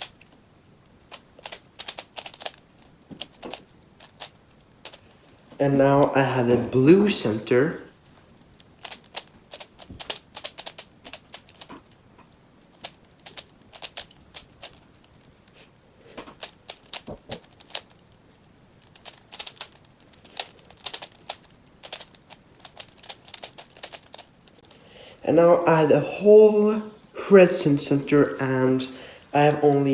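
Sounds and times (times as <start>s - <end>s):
puzzle cube clicking: 1.1s - 5.2s, 8.6s - 12.0s, 12.6s - 15.5s, 16.4s - 18.2s, 18.8s - 24.8s.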